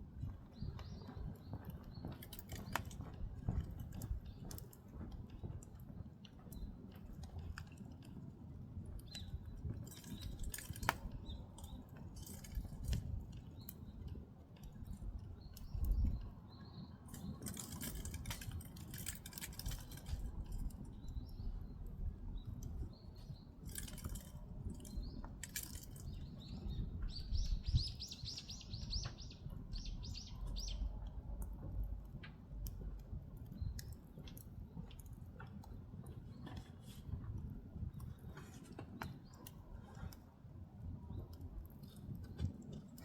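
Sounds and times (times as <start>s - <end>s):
firewood crackling and popping: 0.0s - 43.0s
low rumble of fire: 0.0s - 43.0s
bird chirping trill: 24.9s - 30.9s.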